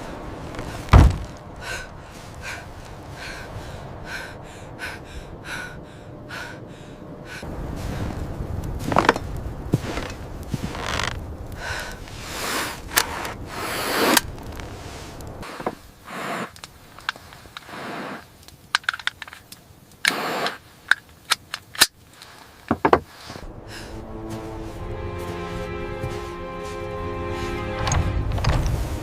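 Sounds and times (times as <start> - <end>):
rushing noise: 0.0 - 18.2, 23.2 - 29.0
sharp cracks and knocks: 0.6 - 1.5.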